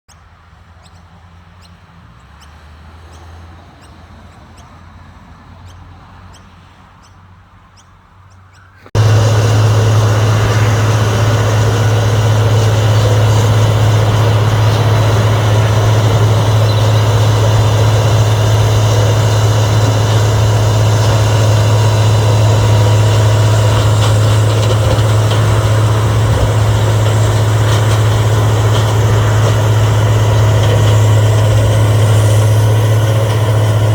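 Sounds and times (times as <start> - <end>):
wood grinder engine humming: 9.0 - 33.9.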